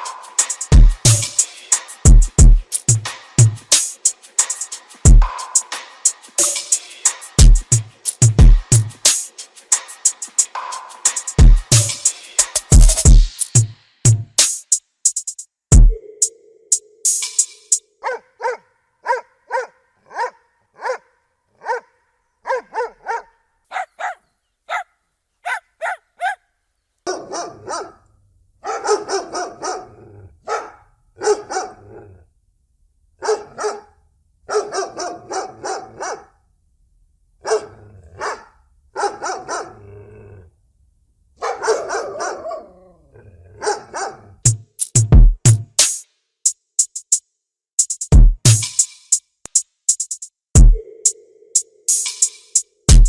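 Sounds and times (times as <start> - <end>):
dog barking: 18.0 - 32.1, 33.2 - 36.4, 37.4 - 40.1, 41.4 - 42.9, 43.5 - 44.4.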